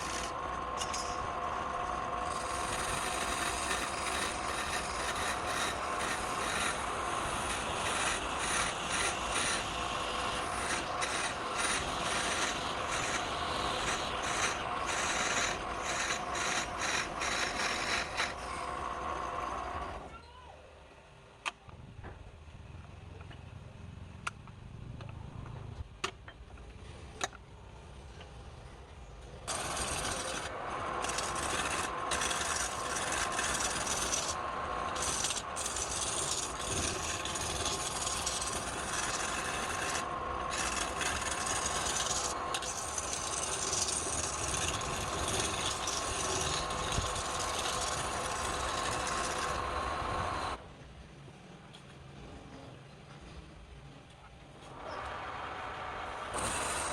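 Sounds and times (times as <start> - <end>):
lathe hum: 0.0 - 20.1, 29.5 - 50.6, 54.7 - 56.9
tool scraping spinning wood: 0.0 - 20.1, 29.4 - 50.6, 54.7 - 56.9.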